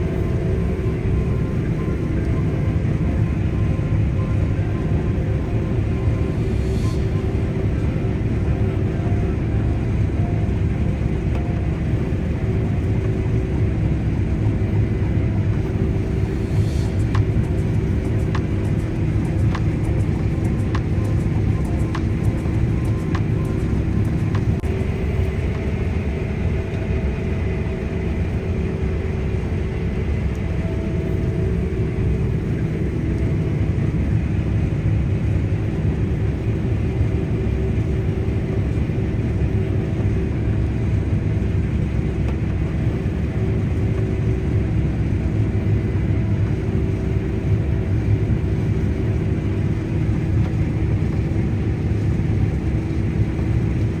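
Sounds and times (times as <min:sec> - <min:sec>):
machine whining tones: 0:00.0 - 0:34.0
combine harvester rumble: 0:00.0 - 0:54.0.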